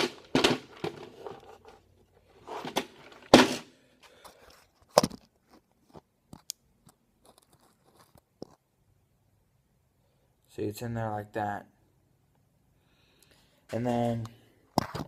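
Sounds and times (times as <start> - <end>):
metal knocks and scraping: 0.0 - 1.8, 2.4 - 3.6.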